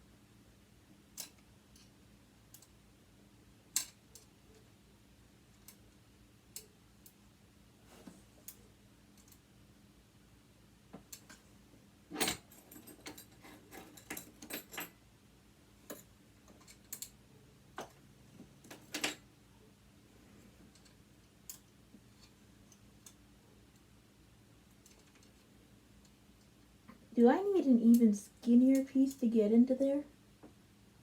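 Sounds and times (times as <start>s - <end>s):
metal tool clicking on metal: 6.5s - 7.2s.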